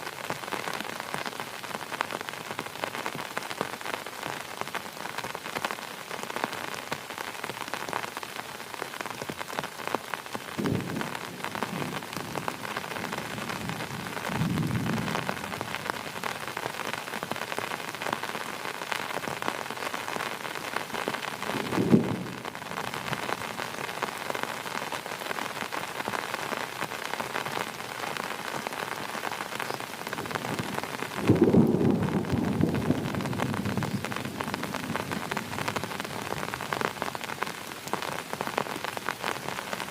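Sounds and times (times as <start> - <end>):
heavy rain: 0.0 - 39.9
thunder rumbling: 21.5 - 22.5, 30.4 - 36.4.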